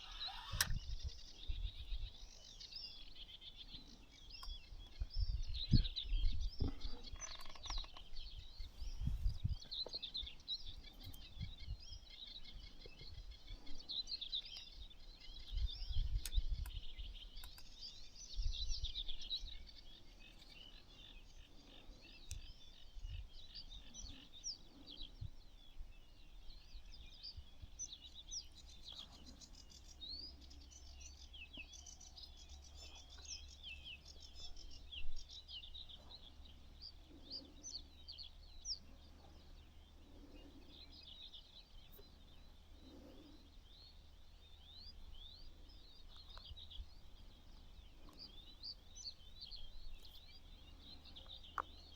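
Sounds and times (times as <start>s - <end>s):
songbirds chirping and trilling: 0.0s - 51.9s.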